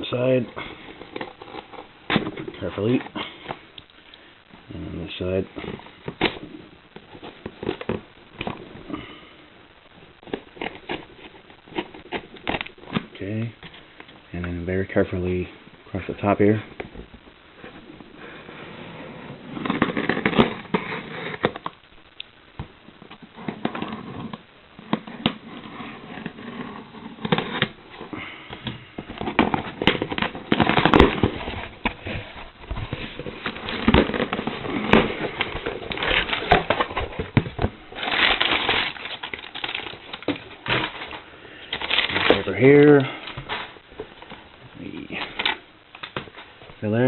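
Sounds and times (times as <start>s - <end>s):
cardboard box rustling and scraping: 29.0s - 44.4s.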